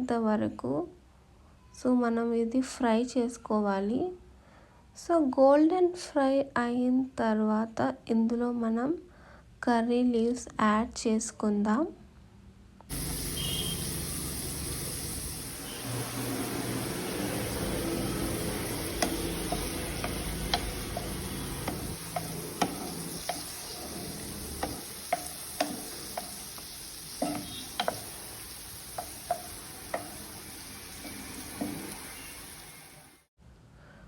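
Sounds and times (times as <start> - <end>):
onions sizzling in pan: 12.9 - 33.3
spoon stirring and clinking on pan: 17.3 - 32.5.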